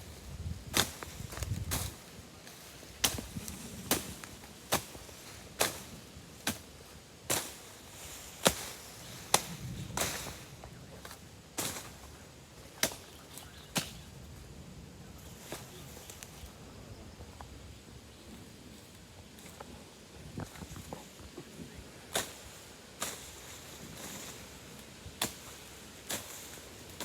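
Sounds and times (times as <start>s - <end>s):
sharp chopping strikes: 8.4s - 10.3s.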